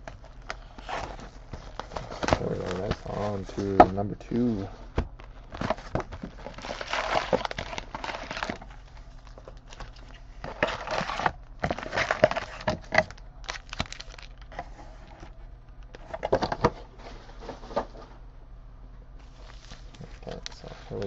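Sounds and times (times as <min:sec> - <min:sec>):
plastic wrapping crinkling and tearing: 0:00.0 - 0:03.9, 0:05.2 - 0:15.2, 0:19.2 - 0:21.0.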